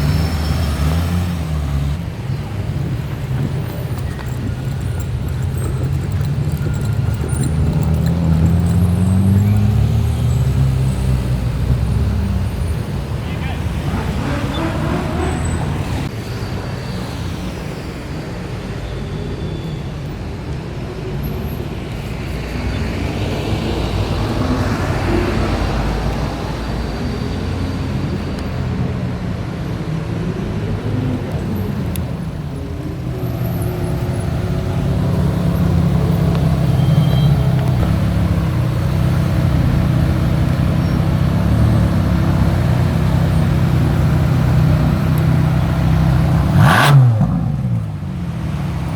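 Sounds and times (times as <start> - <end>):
sports car engines revving: 0.0 - 16.1, 30.0 - 48.9.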